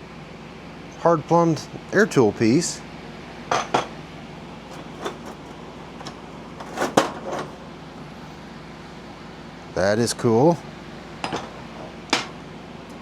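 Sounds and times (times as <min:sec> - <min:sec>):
steady low hum: 0:00.0 - 0:13.0
metal tools clinking in toolbox: 0:04.7 - 0:07.6.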